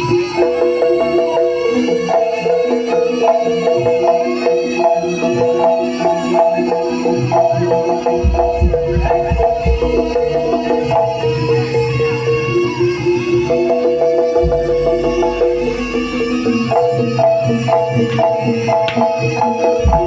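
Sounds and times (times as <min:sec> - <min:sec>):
quick percussion: 0:16.6 - 0:20.0.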